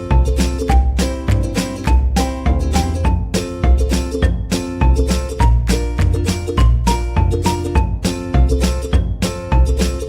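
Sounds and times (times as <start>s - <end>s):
upbeat music with strong bass: 0.0s - 10.0s.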